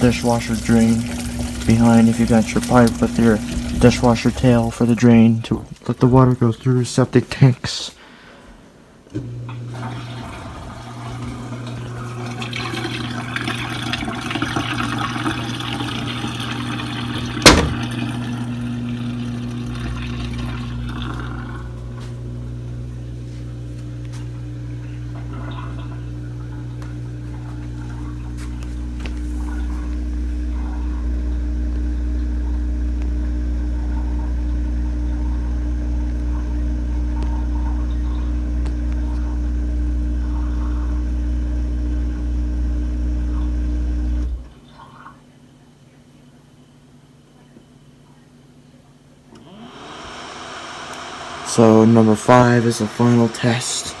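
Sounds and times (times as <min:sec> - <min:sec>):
low motor hum: 0:00.0 - 0:05.8, 0:09.2 - 0:44.6
water rushing through drain: 0:00.0 - 0:06.5, 0:09.3 - 0:44.5, 0:49.4 - 0:54.0
dishwasher drain pump running: 0:00.0 - 0:07.6, 0:09.0 - 0:45.2, 0:49.2 - 0:54.0.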